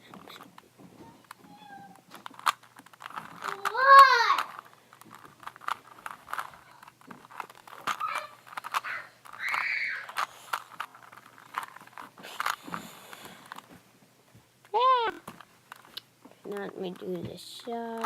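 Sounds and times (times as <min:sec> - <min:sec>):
puzzle cube clicking: 0:02.1 - 0:13.7, 0:15.4 - 0:18.0.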